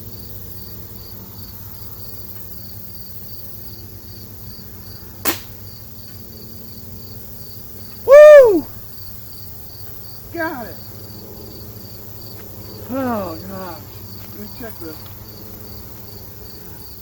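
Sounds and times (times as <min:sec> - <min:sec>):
crickets chirping: 0:00.0 - 0:17.0
air rifle firing: 0:05.2 - 0:05.6
person shouting: 0:08.1 - 0:08.7, 0:10.4 - 0:10.8, 0:12.9 - 0:13.8.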